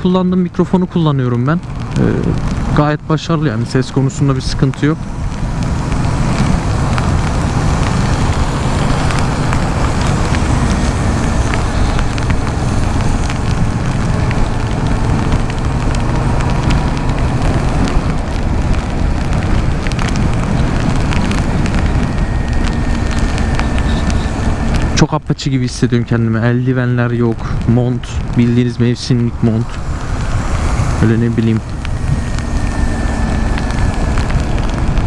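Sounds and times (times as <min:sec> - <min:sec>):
raindrops ticking: 0:00.0 - 0:35.0
wet road noise: 0:00.0 - 0:35.0
wind rushing on microphone: 0:00.0 - 0:35.0
motorcycle engine running: 0:04.9 - 0:25.0.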